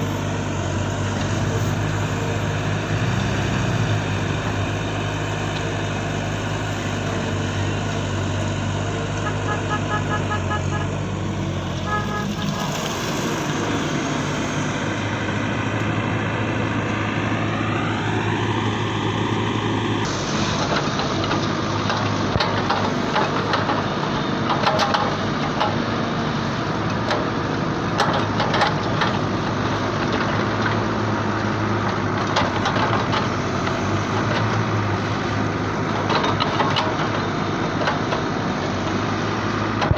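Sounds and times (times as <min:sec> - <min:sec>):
rising whine: 0:09.1 - 0:20.8.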